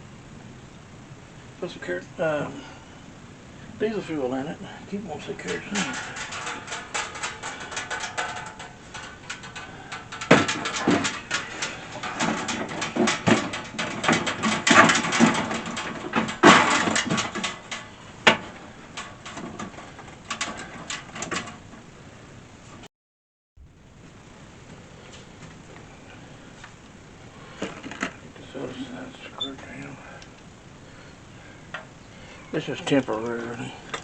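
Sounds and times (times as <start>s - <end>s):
casing parts knocking and scraping: 5.0s - 21.9s, 27.4s - 34.0s.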